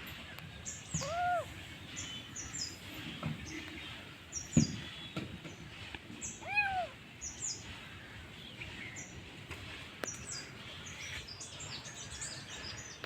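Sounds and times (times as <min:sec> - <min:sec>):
birds chirping: 0:00.0 - 0:13.0
kitten meowing: 0:00.9 - 0:01.6, 0:06.4 - 0:07.0.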